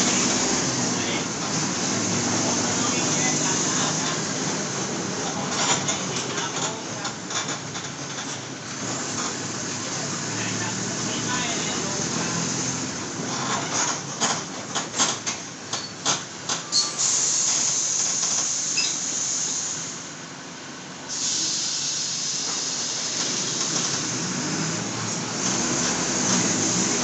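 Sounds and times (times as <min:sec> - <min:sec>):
bus engine accelerating: 0:00.0 - 0:27.0
air brake hiss: 0:16.7 - 0:20.1, 0:21.0 - 0:24.2.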